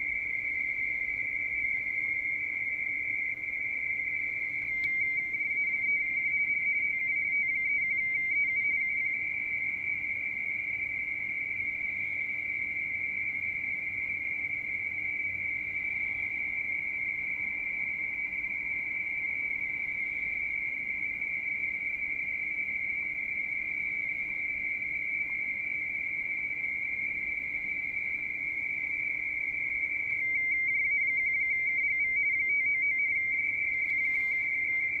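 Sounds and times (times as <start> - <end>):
radio data tone: 0.0 - 10.3, 27.2 - 35.0
radio hiss: 31.6 - 35.0.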